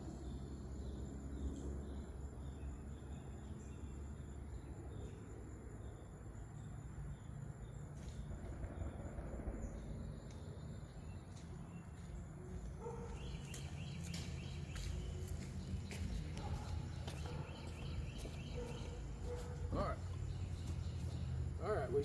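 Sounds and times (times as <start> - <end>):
high insect drone: 0.0 - 15.7
birds chirping: 9.5 - 22.0.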